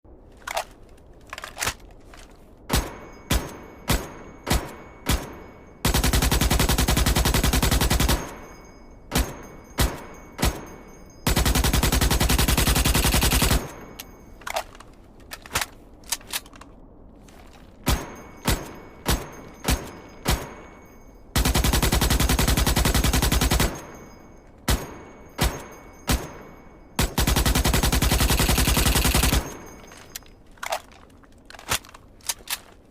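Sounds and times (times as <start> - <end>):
automatic gunfire bursts: 11.3 - 13.7, 27.0 - 29.6.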